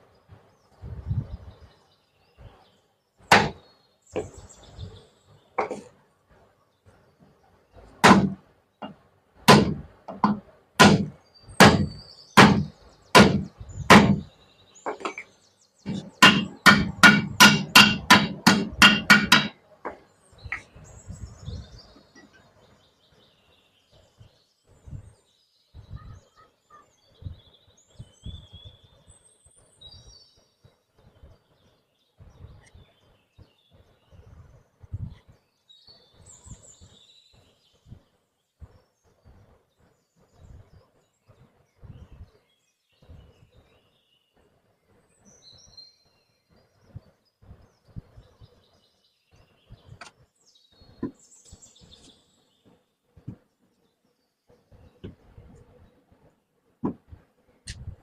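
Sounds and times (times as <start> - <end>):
bird chirps: 0.0 - 6.0, 11.1 - 16.6, 19.6 - 56.1
hammer striking metal: 15.9 - 19.6.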